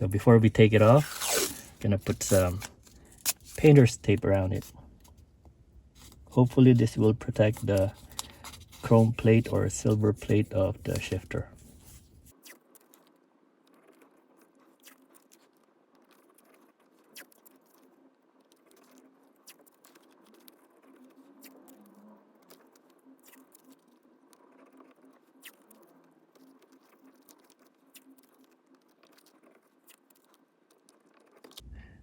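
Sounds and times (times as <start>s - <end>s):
tape crinkling: 0.5s - 5.2s, 5.9s - 12.3s.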